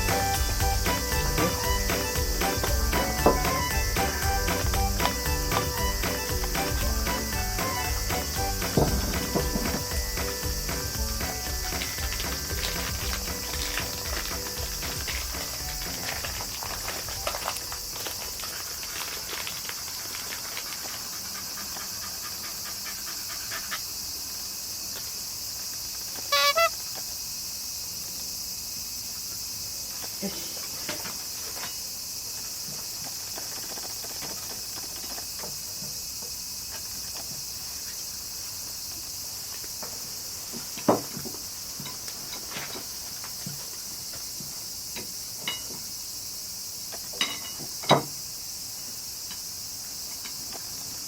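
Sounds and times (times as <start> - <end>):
high insect drone: 0.0 - 51.0.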